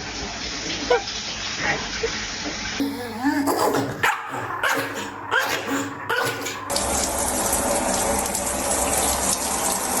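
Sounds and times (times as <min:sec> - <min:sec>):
running tap water: 0:00.0 - 0:10.0
dog whining: 0:02.8 - 0:06.7.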